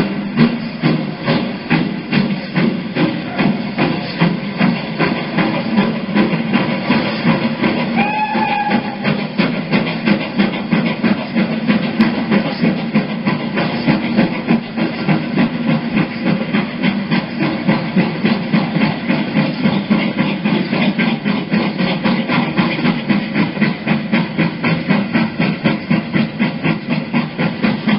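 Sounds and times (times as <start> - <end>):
steam locomotive exhaust beating: 0.0 - 27.9
steam whistle: 8.0 - 9.2.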